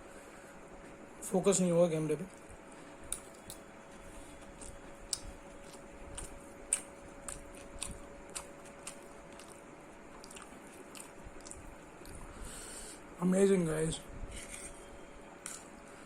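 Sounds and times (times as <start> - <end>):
faint steady hum: 0.0 - 16.0
person chewing food: 2.3 - 12.5, 15.4 - 15.9.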